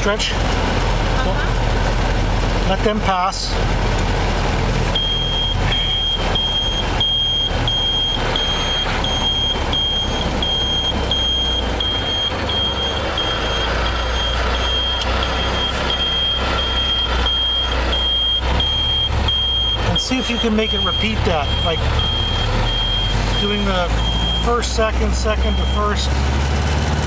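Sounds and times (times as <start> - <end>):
car engine and road noise: 0.0 - 27.0
turn signal ticking: 0.1 - 26.0.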